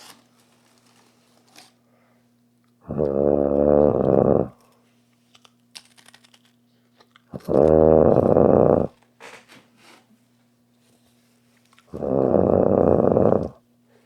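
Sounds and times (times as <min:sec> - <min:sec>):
loud snoring: 0:02.8 - 0:04.6, 0:07.4 - 0:08.9, 0:11.9 - 0:13.6.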